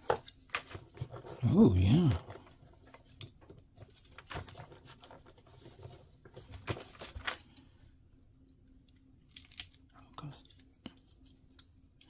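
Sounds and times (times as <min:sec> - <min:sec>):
plastic parts rustling: 0:00.0 - 0:07.8.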